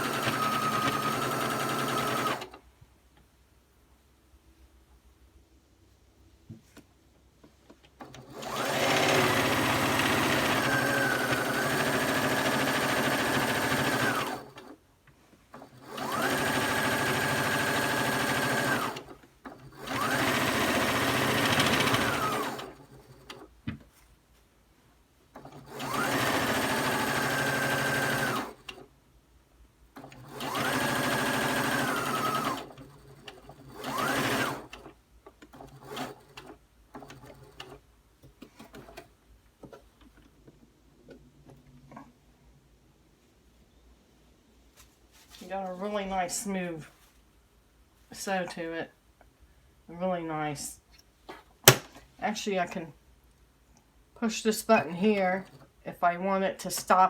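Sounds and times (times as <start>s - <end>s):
sewing machine whining: 0.0s - 2.6s, 8.0s - 14.8s, 15.5s - 23.5s, 25.3s - 28.9s, 30.0s - 37.8s, 54.8s - 55.7s.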